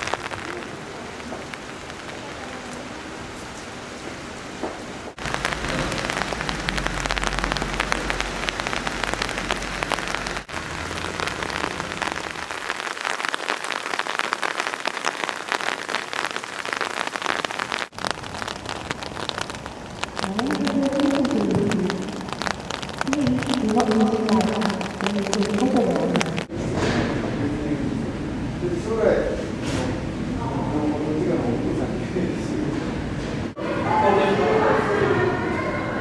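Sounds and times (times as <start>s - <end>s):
heavy rain falling: 0.0s - 36.0s
low rumble: 5.2s - 12.6s.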